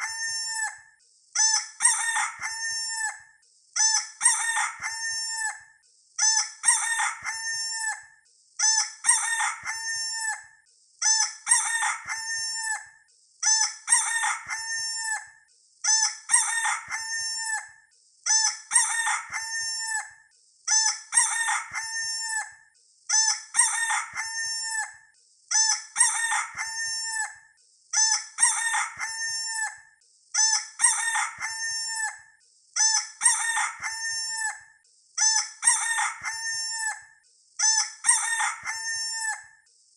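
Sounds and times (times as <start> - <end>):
rooster crowing: 1.8 - 3.2, 4.2 - 5.6, 6.6 - 8.0, 9.0 - 10.5, 11.5 - 12.9, 13.9 - 15.2, 16.3 - 17.7, 18.7 - 20.1, 21.1 - 22.6, 23.6 - 25.0, 26.0 - 27.4, 28.4 - 29.8, 30.8 - 32.2, 33.2 - 34.6, 35.6 - 37.0, 38.0 - 39.5.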